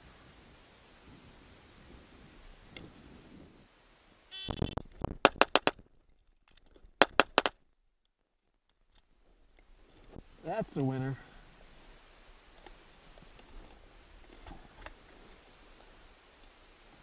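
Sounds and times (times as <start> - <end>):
shot timer beeps: 4.3 - 4.8
pistol shots: 5.3 - 5.8, 7.0 - 7.5.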